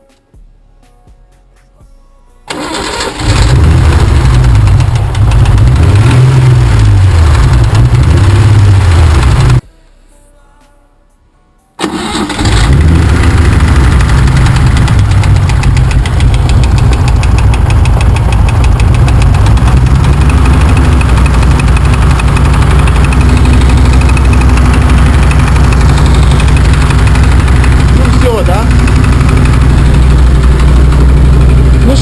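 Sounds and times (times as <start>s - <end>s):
car engine starting and idling: 2.5s - 9.6s, 11.8s - 32.0s
rapid ticking engine knock: 3.8s - 9.6s, 12.7s - 32.0s.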